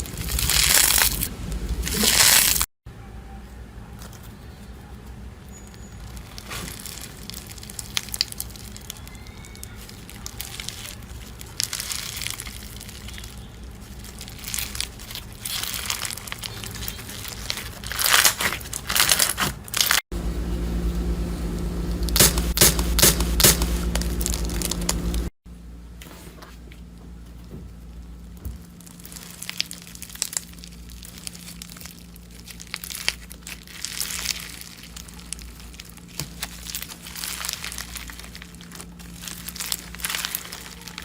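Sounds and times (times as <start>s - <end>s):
slime crackling and popping: 0.0s - 2.7s, 5.7s - 20.0s, 22.0s - 25.3s, 28.2s - 41.0s
steady low hum: 20.1s - 41.0s.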